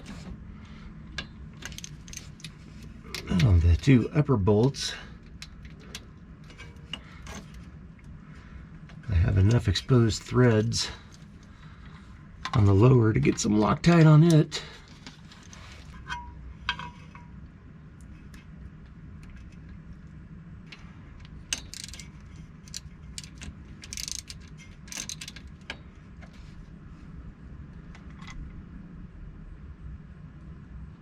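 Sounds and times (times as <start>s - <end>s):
low background hum: 0.0s - 31.0s
metallic clicks of hand tools: 21.2s - 25.8s
ratchet rasping: 21.5s - 25.8s.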